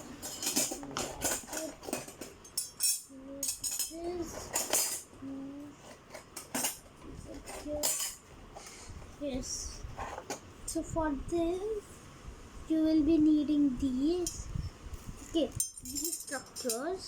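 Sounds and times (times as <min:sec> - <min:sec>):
metal parts clinking: 0:00.0 - 0:05.1, 0:06.1 - 0:06.8, 0:07.4 - 0:08.2, 0:15.6 - 0:16.9.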